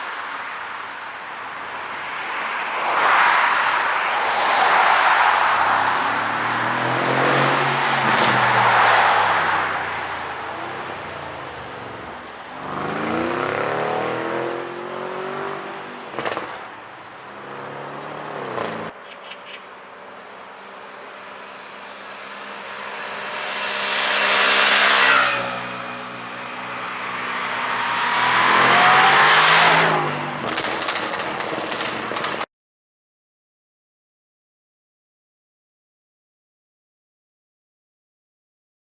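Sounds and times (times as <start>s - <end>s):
car engine revving: 0.5s - 19.0s, 20.5s - 32.4s
exhaust pops and crackles: 16.1s - 16.8s, 30.4s - 32.4s.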